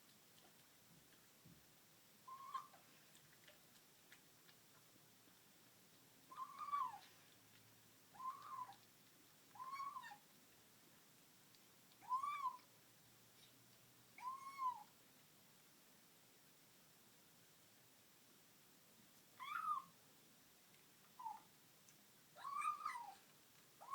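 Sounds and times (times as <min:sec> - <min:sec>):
cat mewing while eating: 0:02.3 - 0:03.0, 0:06.2 - 0:07.3, 0:08.1 - 0:08.9, 0:09.5 - 0:10.3, 0:11.9 - 0:12.7, 0:14.2 - 0:14.9, 0:22.4 - 0:23.9.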